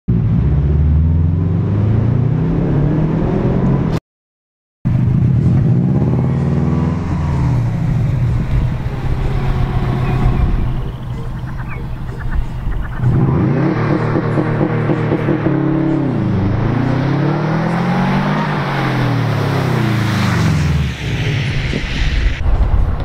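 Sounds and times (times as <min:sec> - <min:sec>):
car engine revving: 0:04.9 - 0:22.3.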